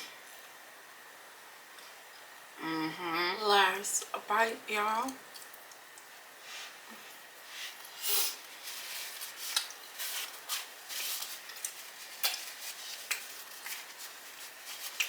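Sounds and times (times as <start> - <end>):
chewing with mouth clicks: 9.4 - 9.9, 10.5 - 14.1.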